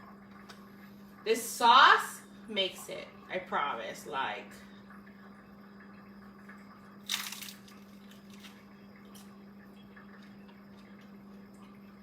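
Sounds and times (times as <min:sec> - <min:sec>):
crisp shell crunching when bitten: 0:07.0 - 0:08.6
chewing crunches: 0:07.0 - 0:09.4.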